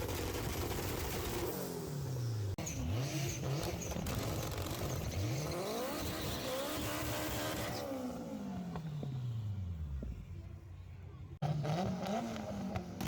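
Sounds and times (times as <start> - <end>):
car engine revving: 11.4 - 13.0.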